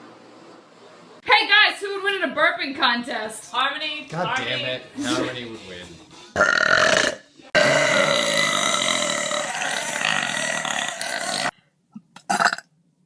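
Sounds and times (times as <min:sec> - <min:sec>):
woman burping: 0:06.4 - 0:11.5, 0:12.2 - 0:12.7.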